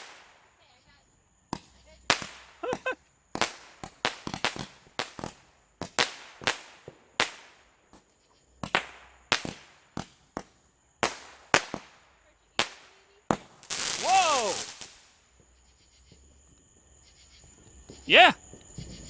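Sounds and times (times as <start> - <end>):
firecracker bangs: 12.6 - 15.1.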